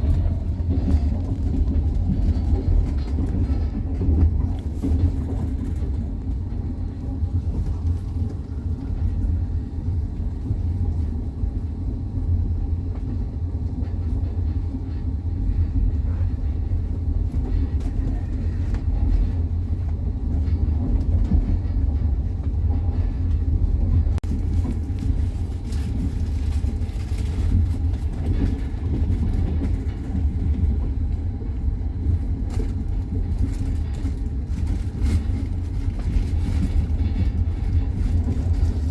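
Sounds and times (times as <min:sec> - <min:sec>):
wheels clicking over rail joints: 0:00.0 - 0:09.2
train wheels rumbling on rails: 0:00.0 - 0:38.9.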